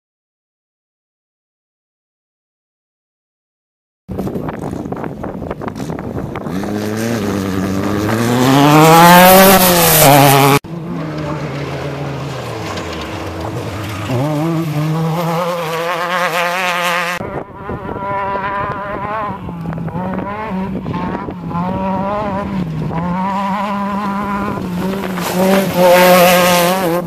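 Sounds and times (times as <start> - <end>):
engine revving: 5.7 - 27.0.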